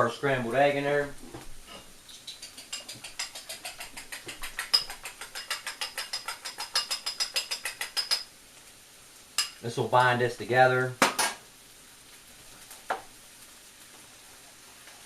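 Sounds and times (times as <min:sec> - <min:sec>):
fork beating eggs in a bowl: 0:02.1 - 0:08.3.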